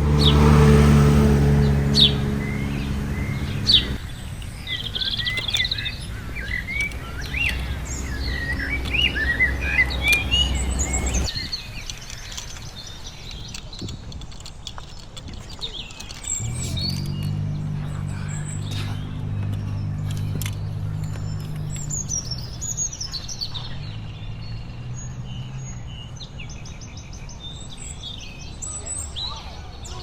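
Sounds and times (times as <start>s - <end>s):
low steady rumble: 0.0s - 4.0s, 16.3s - 22.7s
small birds chirping: 0.0s - 30.0s.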